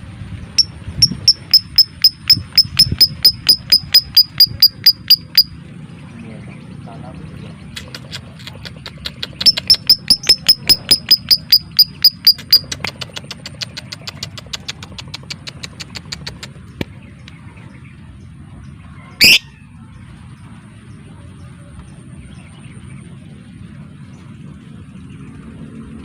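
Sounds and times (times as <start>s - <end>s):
bird chirping rapidly: 0.6s - 6.2s, 7.3s - 17.6s, 19.2s - 19.6s.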